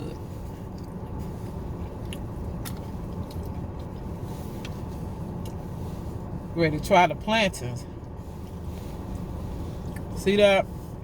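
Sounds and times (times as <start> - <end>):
person chewing food: 0.0 - 5.7, 8.0 - 10.2
car cabin hum: 0.0 - 11.0.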